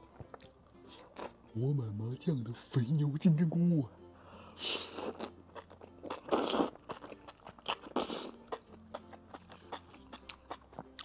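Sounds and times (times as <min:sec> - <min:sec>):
person chewing: 0:00.2 - 0:01.4, 0:04.6 - 0:11.0
slurps: 0:06.2 - 0:06.8.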